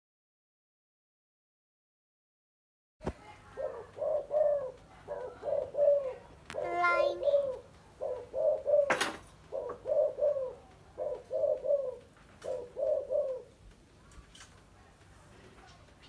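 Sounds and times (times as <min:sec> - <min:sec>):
dove cooing: 0:03.2 - 0:13.8.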